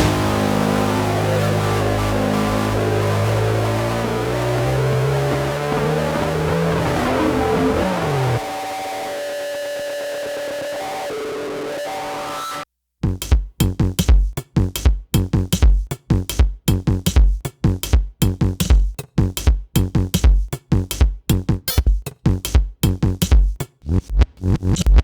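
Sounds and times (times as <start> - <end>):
electronic dance music: 0.0 - 9.2.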